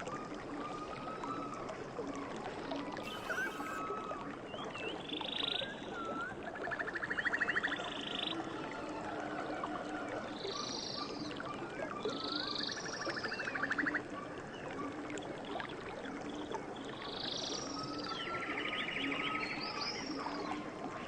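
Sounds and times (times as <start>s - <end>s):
fast buzzy trills: 3.0s - 3.8s
swooping chirps: 3.0s - 3.8s
wild animal calls: 3.0s - 3.8s.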